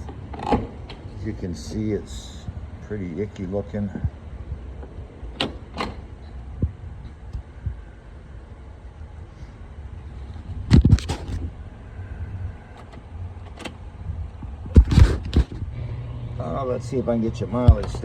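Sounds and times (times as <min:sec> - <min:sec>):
low background rumble: 0:00.0 - 0:18.0.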